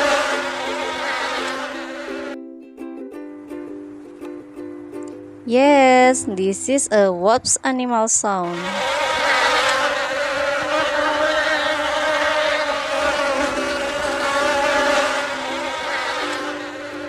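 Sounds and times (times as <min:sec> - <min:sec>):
wasp buzzing in flight: 0:00.0 - 0:02.4, 0:08.4 - 0:17.0.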